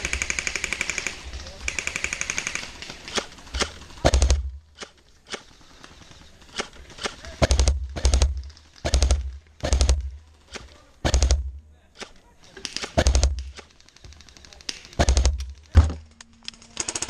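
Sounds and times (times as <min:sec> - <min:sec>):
airsoft gun full-auto bursts: 0:00.0 - 0:15.6.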